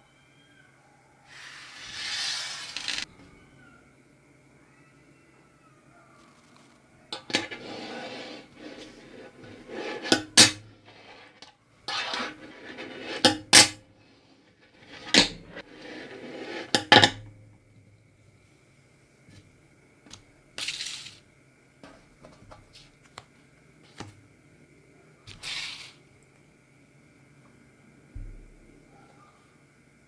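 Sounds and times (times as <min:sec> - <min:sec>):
fingerboard wheels rolling: 0:01.3 - 0:03.1, 0:07.2 - 0:13.8, 0:14.6 - 0:17.2.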